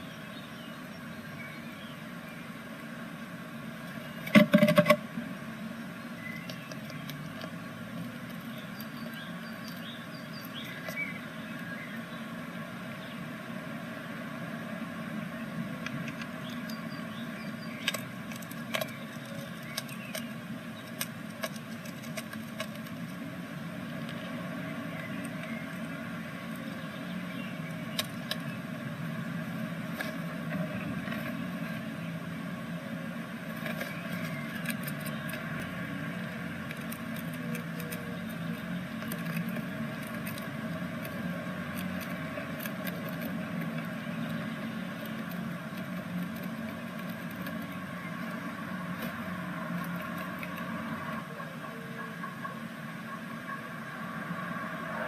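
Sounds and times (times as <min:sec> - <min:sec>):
steady low hum: 0:00.0 - 0:55.0
birds scratching in nest box: 0:17.5 - 0:28.6, 0:33.4 - 0:50.9
faint high drone: 0:50.6 - 0:55.0.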